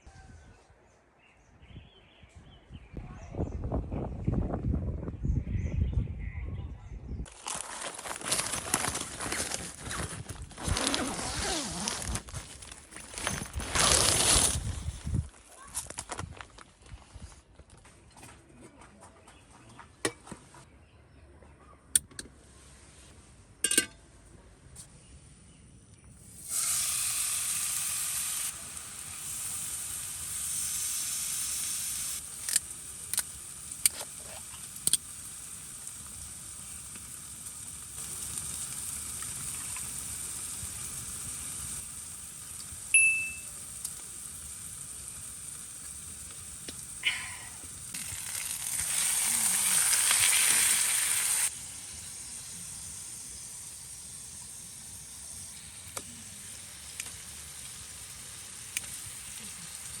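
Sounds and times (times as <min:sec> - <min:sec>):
food sizzling in a pan: 0:26.3 - 1:00.0.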